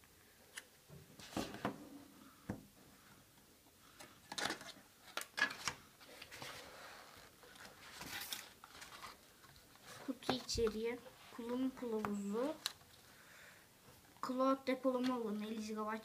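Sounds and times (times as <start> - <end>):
packaging rustling: 4.2 - 13.1.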